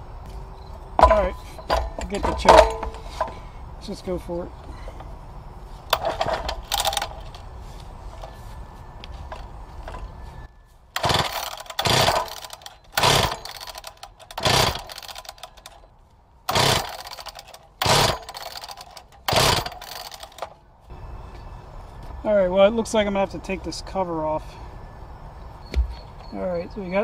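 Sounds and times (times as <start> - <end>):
recoil starter pulls cranking engine: 5.9 - 7.4, 11.0 - 15.9, 16.5 - 20.6.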